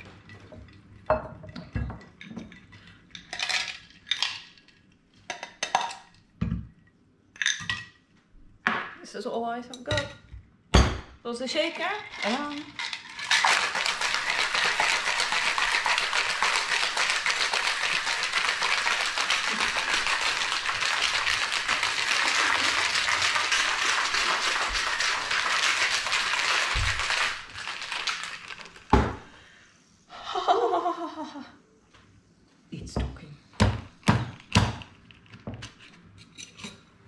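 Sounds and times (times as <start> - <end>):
ice rattling in cocktail shaker: 2.5 - 4.9, 11.7 - 29.1.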